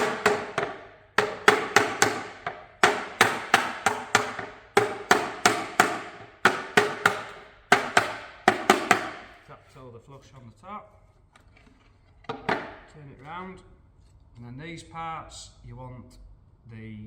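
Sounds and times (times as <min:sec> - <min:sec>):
rubber mallet knocking wood: 0:00.0 - 0:09.4, 0:12.3 - 0:12.9.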